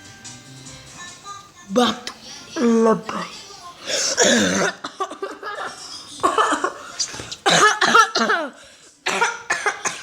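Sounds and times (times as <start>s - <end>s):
person coughing theatrically: 3.9s - 5.5s, 7.4s - 10.0s.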